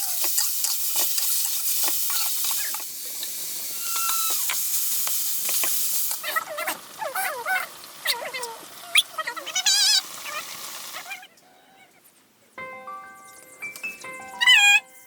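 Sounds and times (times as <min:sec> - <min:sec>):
food sizzling in a hot pan: 0:00.0 - 0:11.1.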